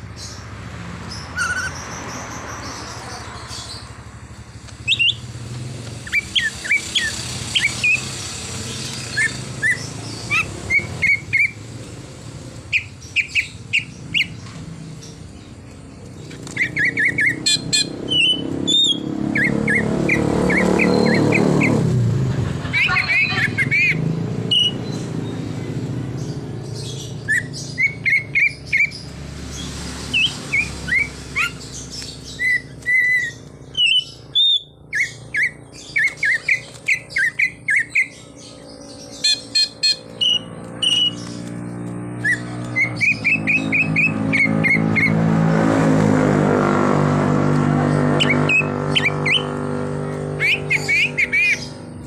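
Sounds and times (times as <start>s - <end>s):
bird singing whistled notes: 4.8s - 5.3s, 6.0s - 8.2s, 8.8s - 11.6s, 12.7s - 14.4s, 16.4s - 21.8s, 23.6s - 25.5s, 26.3s - 29.0s, 30.1s - 41.4s, 42.2s - 45.2s.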